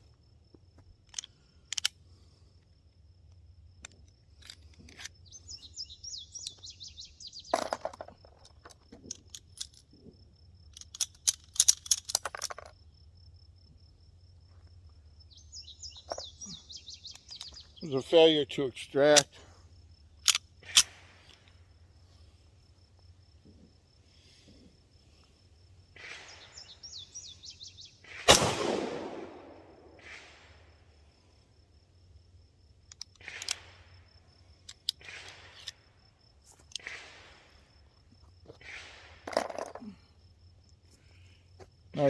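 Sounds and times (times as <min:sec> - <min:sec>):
metallic gun handling clicks: 0:01.0 - 0:02.0, 0:03.8 - 0:05.2, 0:07.6 - 0:09.8, 0:10.7 - 0:12.8, 0:20.2 - 0:21.6, 0:32.9 - 0:33.8, 0:34.6 - 0:35.8
pistol shot: 0:28.1 - 0:30.7.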